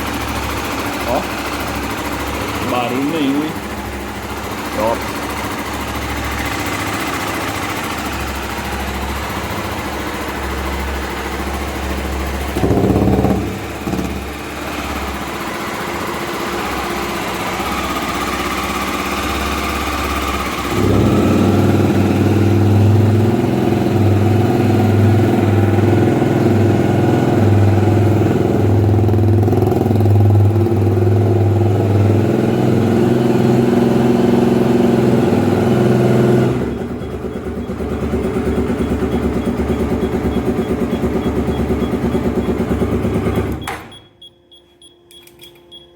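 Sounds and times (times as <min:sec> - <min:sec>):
motorcycle engine idling: 0:00.0 - 0:43.6
engine throttle blip: 0:36.0 - 0:45.9.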